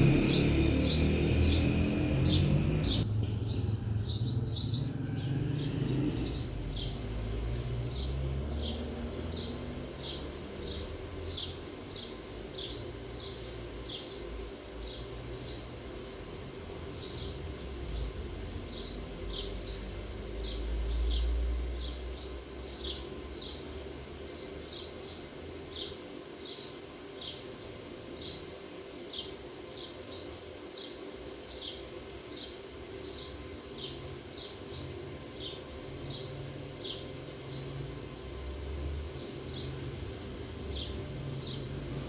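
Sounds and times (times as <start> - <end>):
small bird chirping: 0.0 - 15.6, 29.1 - 42.0
low background hum: 0.0 - 42.0.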